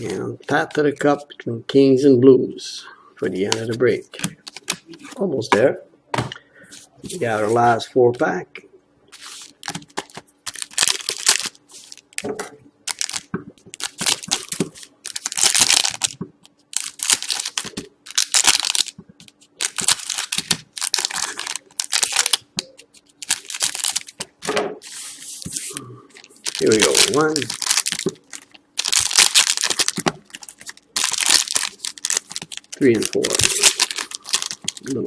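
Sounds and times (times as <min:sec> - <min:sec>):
card pack wrapper tearing and crinkling: 0:09.2 - 0:12.3, 0:12.9 - 0:24.3, 0:24.9 - 0:35.0.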